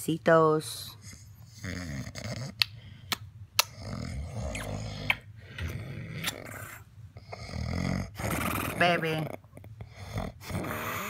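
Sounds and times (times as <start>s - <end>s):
kissing smacks: 2.6s - 3.8s, 4.5s - 6.5s.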